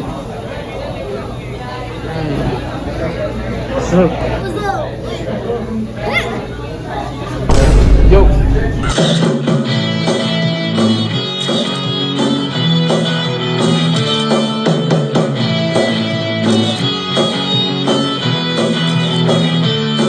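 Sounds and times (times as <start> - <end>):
guitar music with drums: 7.5 - 20.0.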